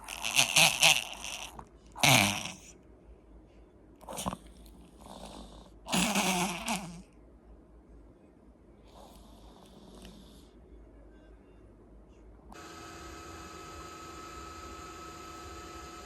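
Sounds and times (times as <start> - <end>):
dog snorting through wet nose: 0.0 - 2.7, 4.0 - 7.0.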